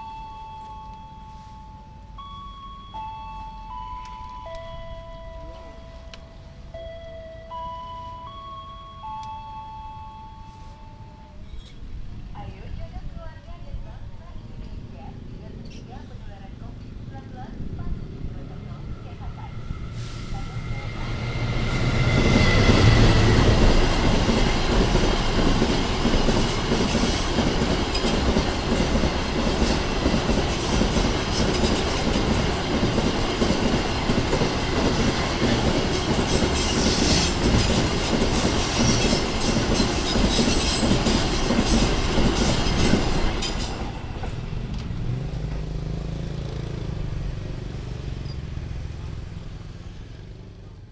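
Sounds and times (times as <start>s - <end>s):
road traffic: 0.0s - 50.9s
train wheels rumbling and clattering: 18.4s - 47.0s.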